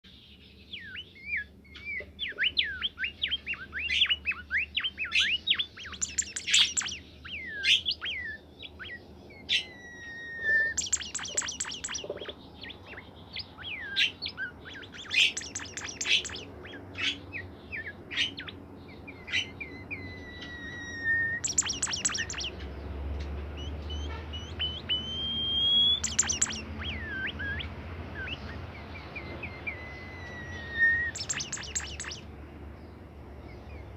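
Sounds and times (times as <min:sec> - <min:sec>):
songbird singing: 0:00.0 - 0:33.9.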